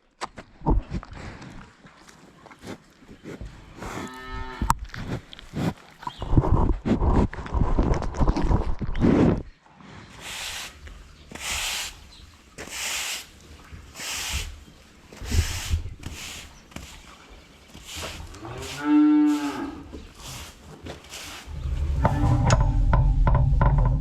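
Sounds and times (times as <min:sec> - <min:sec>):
calf mooing: 0:03.8 - 0:04.7, 0:18.3 - 0:20.0.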